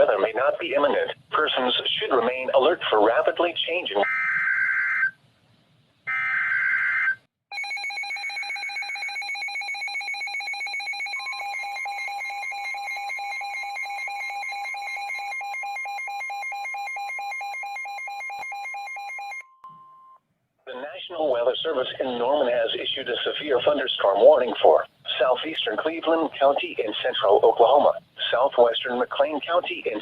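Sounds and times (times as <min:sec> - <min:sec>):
steady warning alarm tone: 0:06.1 - 0:19.6
rapid electronic alarm beeping: 0:07.5 - 0:19.5.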